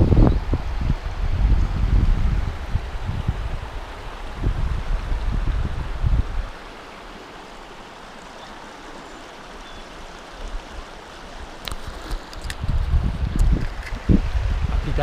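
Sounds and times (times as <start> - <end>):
wind buffeting microphone: 0.0 - 6.6, 10.6 - 15.0
rushing stream: 0.0 - 15.0.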